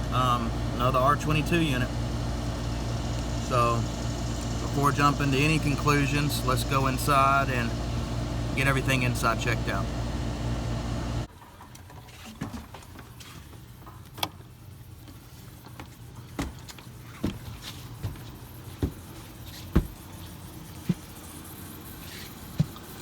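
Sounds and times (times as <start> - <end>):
air conditioner unit humming: 0.0 - 11.4, 12.8 - 23.0
light knocks and thumps: 16.4 - 19.1, 19.7 - 20.1.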